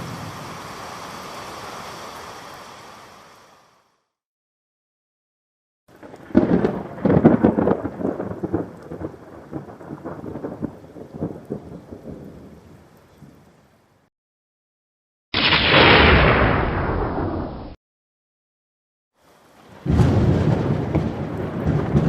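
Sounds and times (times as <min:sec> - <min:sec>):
thunder crack and rumble: 0:05.9 - 0:12.5, 0:15.4 - 0:17.8, 0:19.7 - 0:22.0.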